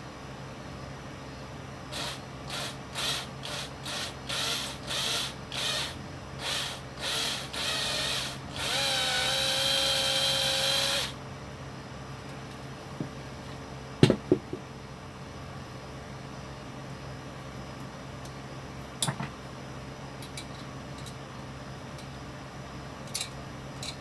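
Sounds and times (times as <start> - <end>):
power drill whining: 1.9 - 11.2.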